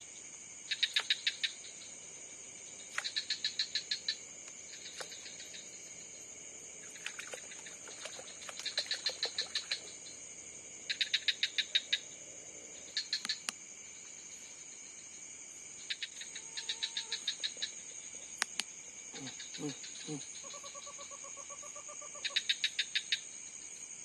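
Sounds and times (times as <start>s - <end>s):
crickets trilling: 0.0s - 24.0s
animal sharp clicks: 18.4s - 18.7s.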